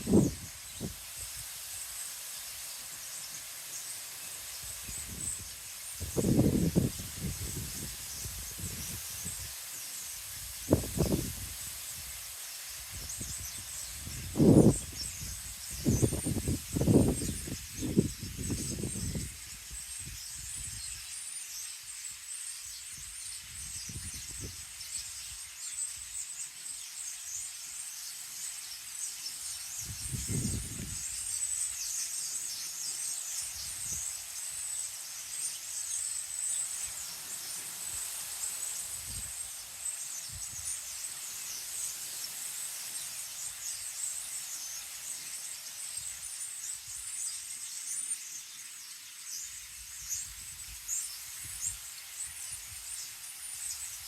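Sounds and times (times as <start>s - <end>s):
wind rumbling on microphone: 0.0s - 1.4s, 4.8s - 9.5s, 10.4s - 12.2s, 12.9s - 20.9s, 23.5s - 24.6s, 29.8s - 31.2s
small birds chirping: 0.0s - 54.0s.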